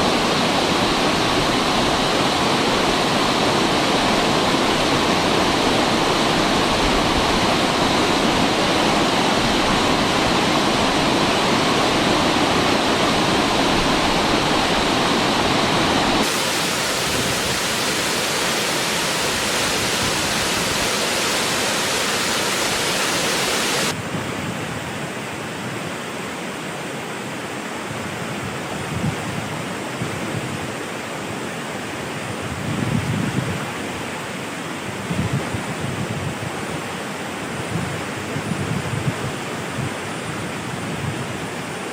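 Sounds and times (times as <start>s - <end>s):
waterfall rushing: 0.0s - 24.1s, 36.4s - 41.9s.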